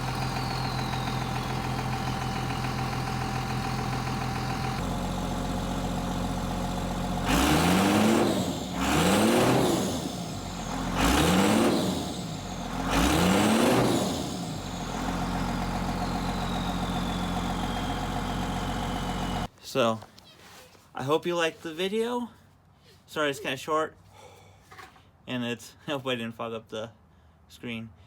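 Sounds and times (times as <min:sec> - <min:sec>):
diesel engine idling and revving: 0:00.0 - 0:19.5.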